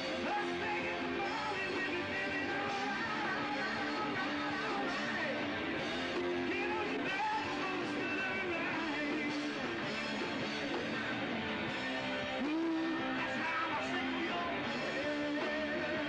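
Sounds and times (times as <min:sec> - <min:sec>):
person singing: 0:00.0 - 0:05.4, 0:06.1 - 0:09.8, 0:12.3 - 0:16.0
electric guitar: 0:00.0 - 0:16.0
rock band playing: 0:00.0 - 0:16.0.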